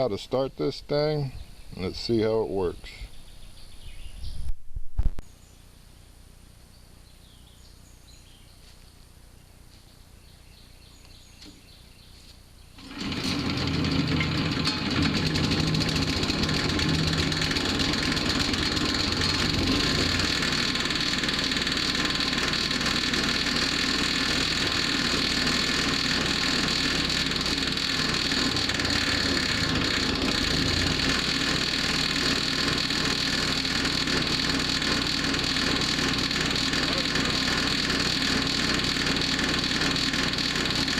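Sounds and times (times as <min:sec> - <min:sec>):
gas engine starting and running: 0:12.8 - 0:40.9.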